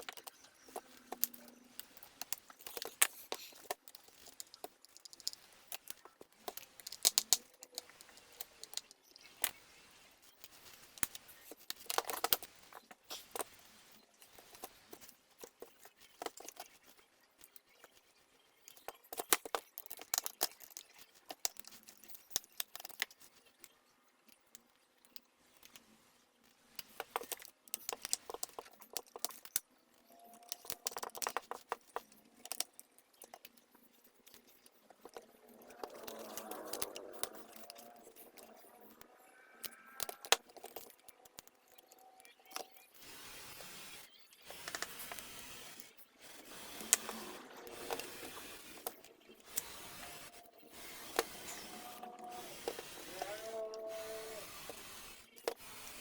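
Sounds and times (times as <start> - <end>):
plastic parts clicking and rattling: 0.0 - 56.0.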